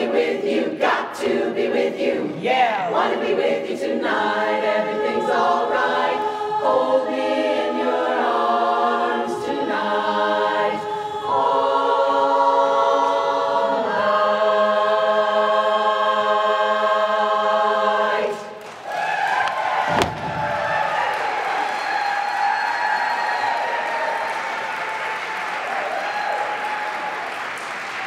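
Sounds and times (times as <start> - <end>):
women's chorus singing a cappella: 0.0 - 18.6
audience cheering and applause: 18.6 - 28.0.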